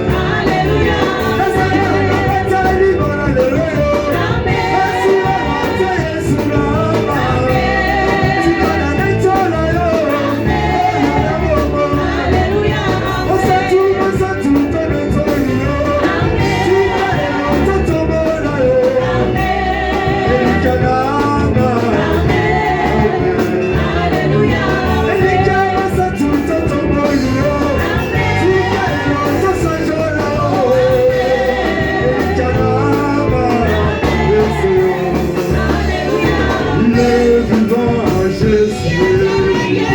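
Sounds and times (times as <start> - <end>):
band accompaniment: 0.0 - 39.9
worship singing: 0.0 - 39.9.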